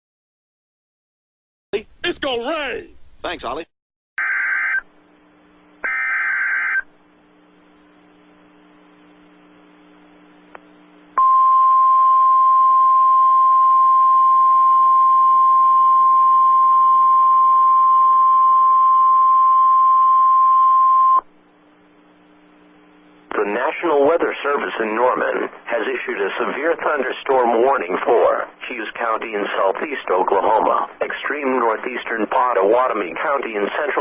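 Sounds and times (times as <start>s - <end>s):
faint radio hiss: 5.0s - 11.2s, 21.3s - 34.0s
loud steady alarm tone: 5.8s - 6.9s.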